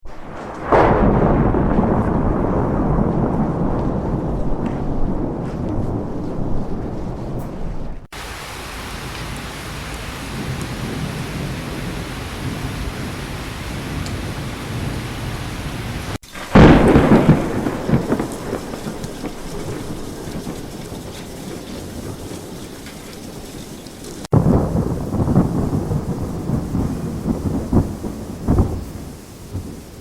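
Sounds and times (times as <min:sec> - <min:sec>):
loud thunderclap: 0:00.0 - 0:23.5, 0:24.2 - 0:30.0
low thunder rumble: 0:00.0 - 0:30.0
heavy rain hissing: 0:08.1 - 0:30.0.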